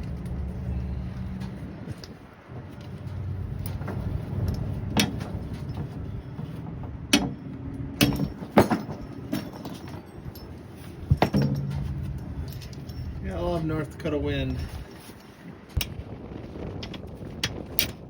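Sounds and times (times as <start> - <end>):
wind rumbling on microphone: 0.0 - 18.0
metal clicks and knocks: 2.8 - 13.2.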